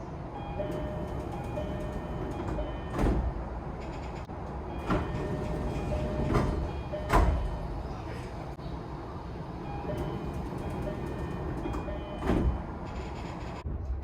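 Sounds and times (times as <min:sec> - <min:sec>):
train door chime: 0:00.4 - 0:03.3, 0:03.9 - 0:07.8, 0:09.6 - 0:13.6
sliding doors thudding: 0:00.6 - 0:03.8, 0:04.5 - 0:07.9, 0:09.9 - 0:12.9.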